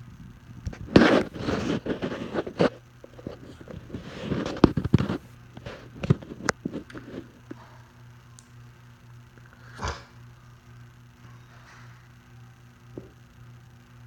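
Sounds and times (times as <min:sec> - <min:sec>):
air conditioner hum: 0:00.0 - 0:14.0
rustling and scraping: 0:00.6 - 0:07.8.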